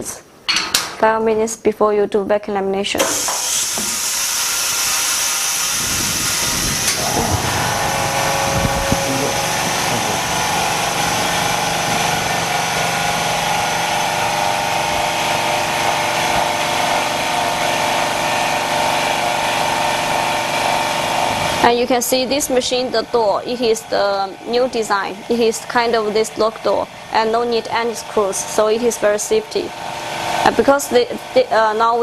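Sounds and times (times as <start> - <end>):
compressed air hissing: 3.0 - 18.2
motor hum: 3.0 - 32.0.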